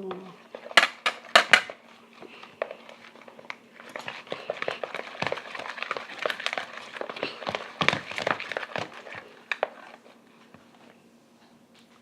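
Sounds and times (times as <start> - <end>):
spatula stirring slime: 0.1 - 10.9.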